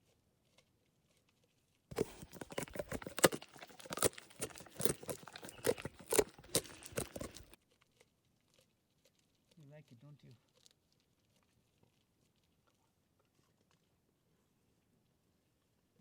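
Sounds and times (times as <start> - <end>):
sharp crunching and crackling: 1.9 - 7.6.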